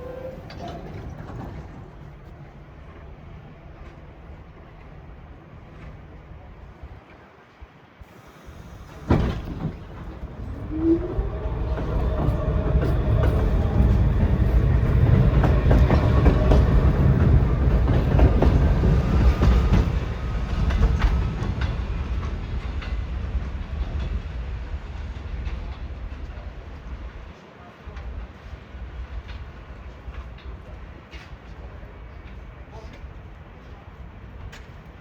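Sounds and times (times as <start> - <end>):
wheels clicking over rail joints: 0.0 - 2.4, 8.9 - 23.3
subway train rumbling: 0.0 - 35.0.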